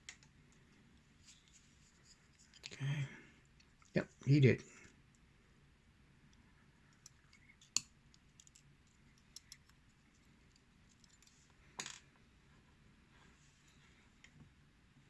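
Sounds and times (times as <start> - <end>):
small metal parts clicking: 8.4 - 8.6.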